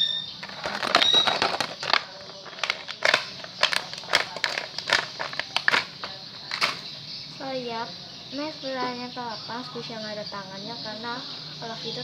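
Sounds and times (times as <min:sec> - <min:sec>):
squishy toys crinkling and clicking: 0:00.4 - 0:06.9.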